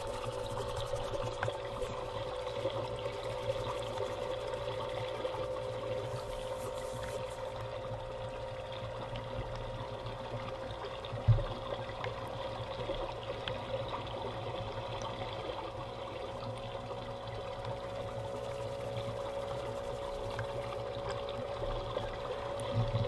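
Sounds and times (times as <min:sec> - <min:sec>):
electric pump motor humming: 0:00.0 - 0:08.3
water trickling and pouring: 0:00.0 - 0:23.0.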